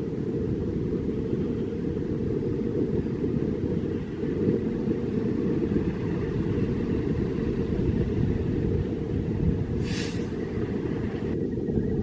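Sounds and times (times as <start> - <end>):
vehicle engine rumble: 0.0 - 12.0
short hiss: 9.8 - 10.4.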